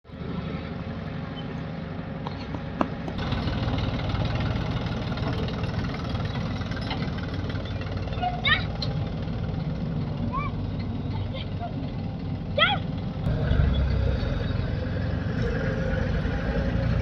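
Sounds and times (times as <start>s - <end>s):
diesel engine idling: 0.1s - 17.0s.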